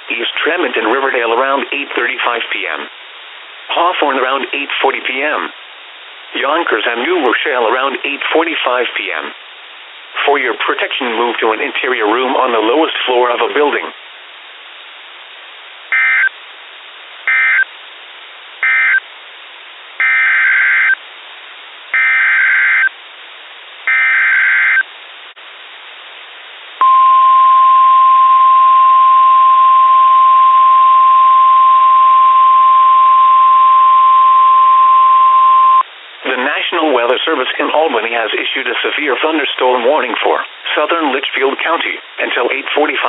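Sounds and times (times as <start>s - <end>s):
steady warning alarm tone: 15.9s - 16.3s, 17.3s - 17.7s, 18.6s - 19.0s, 20.0s - 21.0s, 22.0s - 22.9s, 23.9s - 24.8s, 26.8s - 35.8s.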